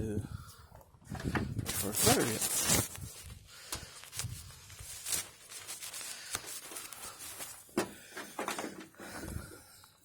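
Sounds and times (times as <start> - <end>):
cable rustling: 1.2 - 9.0.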